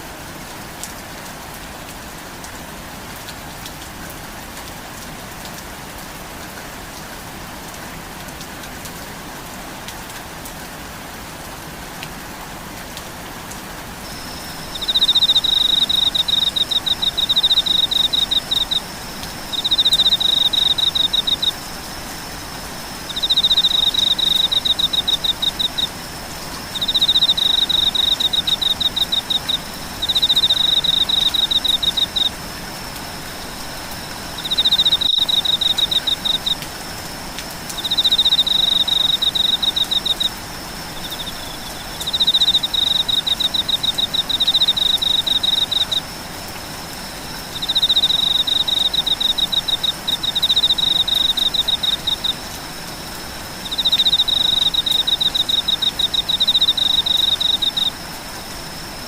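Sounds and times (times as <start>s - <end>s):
rain hiss: 0.0s - 59.0s
insects chirping: 14.0s - 59.0s.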